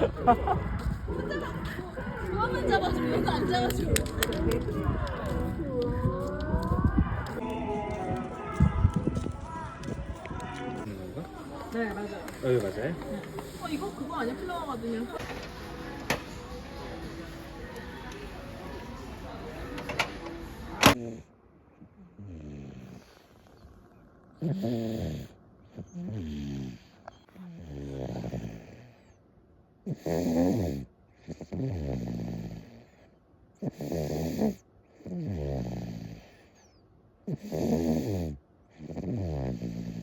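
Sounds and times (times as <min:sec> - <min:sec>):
toddler snoring: 0:22.0 - 0:23.2, 0:24.4 - 0:29.1, 0:29.9 - 0:33.0, 0:33.6 - 0:36.5, 0:37.3 - 0:40.0.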